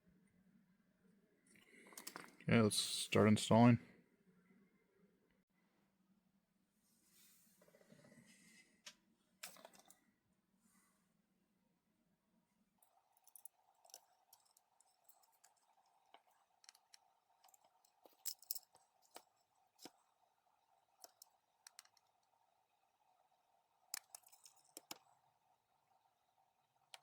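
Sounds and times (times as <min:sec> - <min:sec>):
faint steady hum: 0:00.0 - 0:27.0
small tools clicking and tapping: 0:13.2 - 0:20.0, 0:21.0 - 0:22.3, 0:23.9 - 0:25.1.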